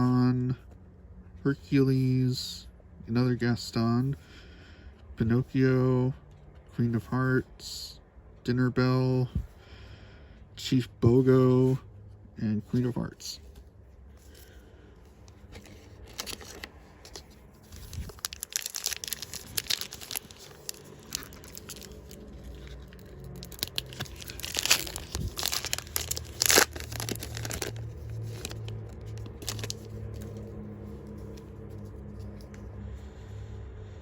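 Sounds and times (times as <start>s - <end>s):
foil wrapper crinkling: 15.3s - 32.5s.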